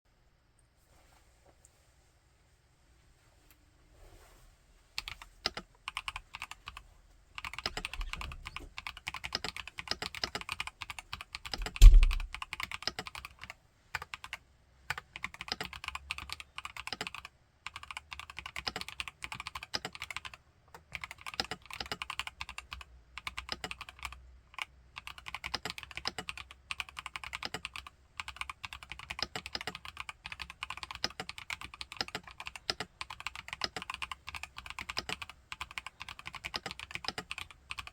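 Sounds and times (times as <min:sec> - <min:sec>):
mechanical keyboard typing: 0:05.0 - 0:06.8, 0:07.4 - 0:37.9
heavy low thump: 0:11.8 - 0:12.3.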